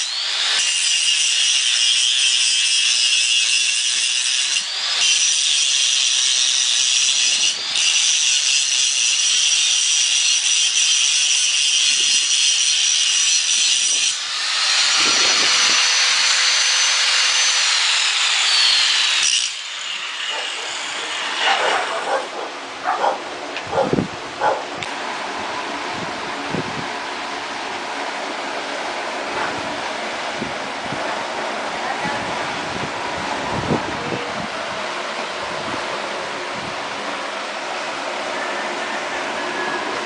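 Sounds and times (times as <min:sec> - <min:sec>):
angle grinder grinding steel: 0:00.0 - 0:25.0.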